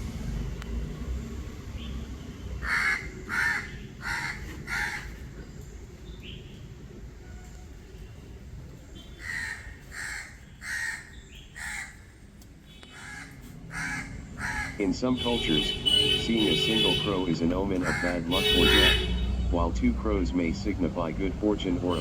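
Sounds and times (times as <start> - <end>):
crow cawing: 2.6 - 5.2, 9.2 - 12.2, 12.8 - 17.0, 17.8 - 19.1.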